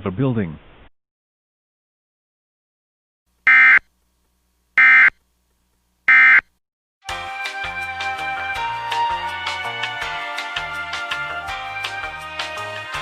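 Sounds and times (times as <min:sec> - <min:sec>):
harsh electronic blips: 0:03.5 - 0:03.8, 0:06.1 - 0:06.5
music: 0:07.0 - 0:13.0.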